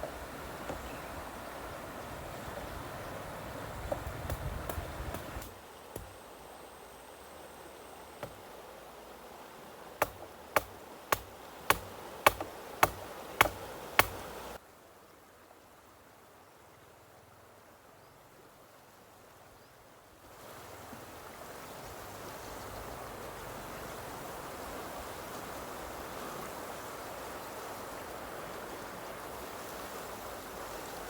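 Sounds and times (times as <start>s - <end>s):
background hiss: 0.0s - 31.0s
sharp knocks: 10.0s - 14.2s.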